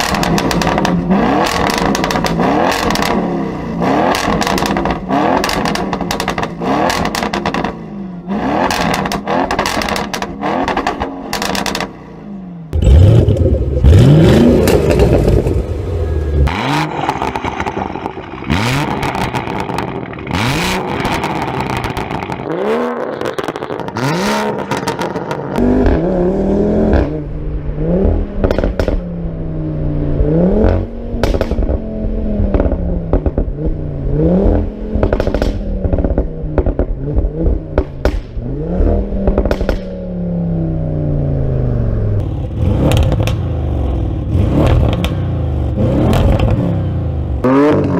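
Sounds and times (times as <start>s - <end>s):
exhaust pops and bangs: 0.0s - 3.2s, 28.0s - 29.1s, 31.2s - 31.8s, 32.4s - 33.6s, 34.4s - 38.5s, 39.2s - 39.9s, 42.8s - 43.4s
car engine revving: 0.0s - 47.9s.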